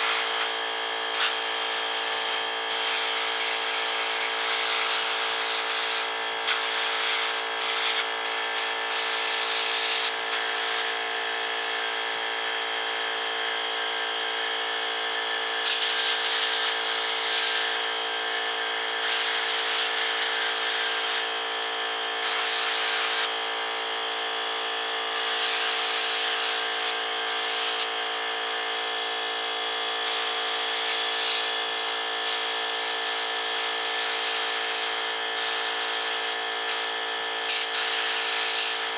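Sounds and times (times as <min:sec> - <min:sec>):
sandblaster hissing bursts: 0:00.0 - 0:00.5, 0:01.1 - 0:11.0, 0:15.7 - 0:17.8, 0:19.0 - 0:21.3, 0:22.2 - 0:23.3, 0:25.2 - 0:27.9, 0:30.0 - 0:36.9, 0:37.5 - 0:38.9
air compressor humming: 0:00.0 - 0:11.4, 0:15.6 - 0:38.9.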